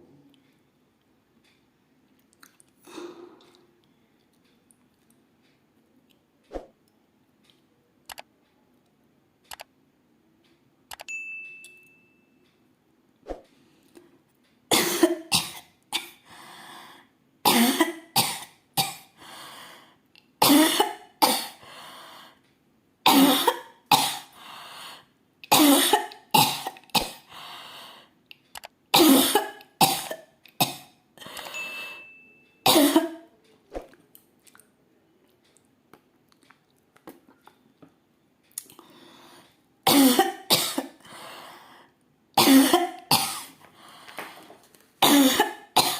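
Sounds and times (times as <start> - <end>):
breath in: 2.8 - 3.7
woman coughing: 14.7 - 16.2, 17.5 - 19.1, 20.4 - 21.6, 23.1 - 24.3, 25.5 - 27.3, 29.0 - 30.9, 32.7 - 33.3, 39.9 - 41.0, 42.4 - 43.6, 45.0 - 45.9.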